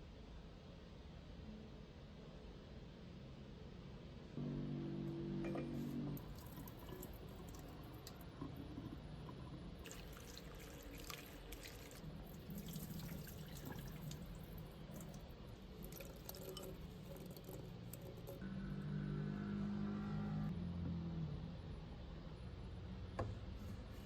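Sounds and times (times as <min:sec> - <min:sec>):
tap water running into sink: 0:09.8 - 0:18.4.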